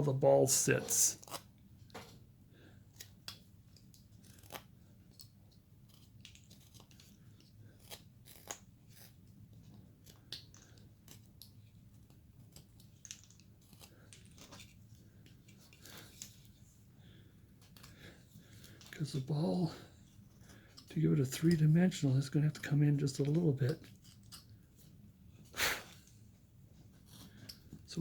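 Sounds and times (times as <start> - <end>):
carving blade clicking and scraping wood: 2.9 - 16.5.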